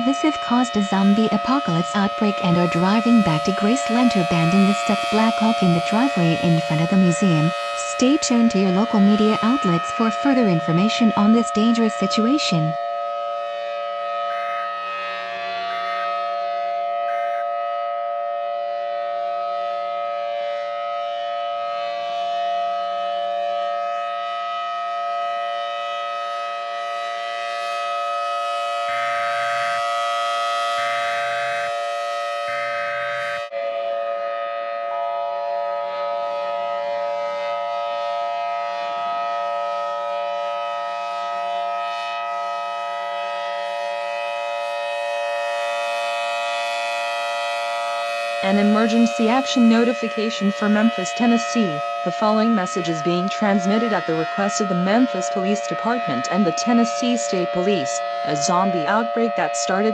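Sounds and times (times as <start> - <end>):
civil defense siren chord: 0.0 - 59.9
short siren notes: 0.0 - 59.9.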